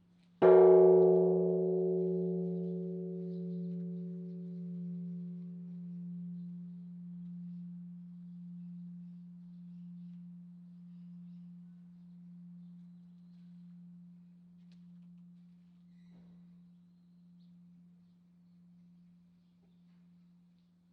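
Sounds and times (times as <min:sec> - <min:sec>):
large temple bell humming: 0:00.4 - 0:20.5.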